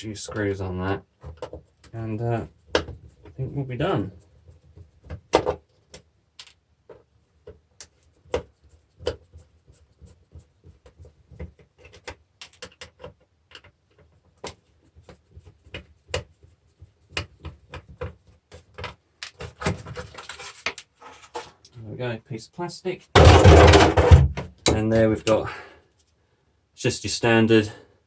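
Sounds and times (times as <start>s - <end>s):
clicks of screws and plastic parts: 5.1s - 6.6s, 11.4s - 14.6s.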